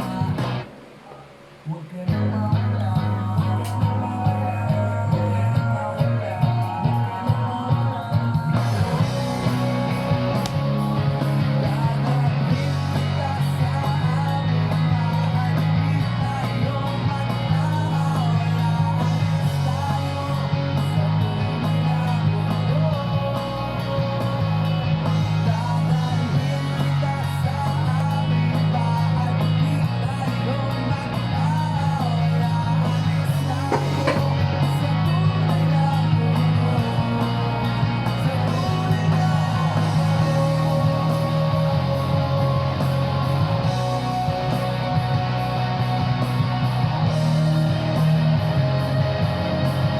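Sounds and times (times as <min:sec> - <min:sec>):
bass line: 0:00.0 - 0:01.0, 0:01.8 - 0:49.9
electric guitar: 0:00.0 - 0:49.9
person singing: 0:01.7 - 0:24.4.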